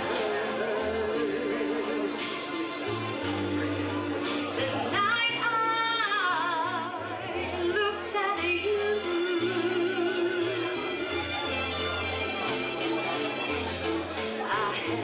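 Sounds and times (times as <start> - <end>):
musical accompaniment with bass: 0.0 - 15.0
woman singing with vibrato: 4.6 - 11.4.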